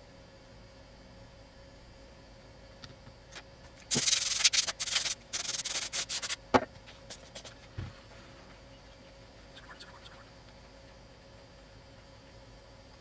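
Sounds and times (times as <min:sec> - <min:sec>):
quick rubbing strokes: 0:03.9 - 0:06.4, 0:07.1 - 0:07.5.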